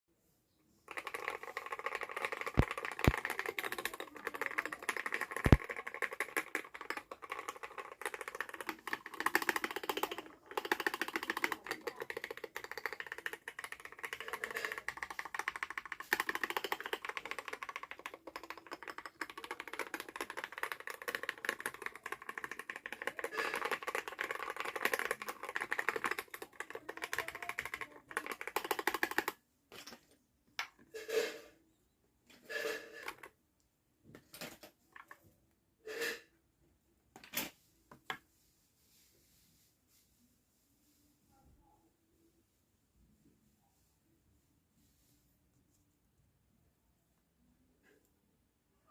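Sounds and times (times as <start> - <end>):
fast mechanical keyboard typing: 0.9 - 29.4, 32.5 - 33.3.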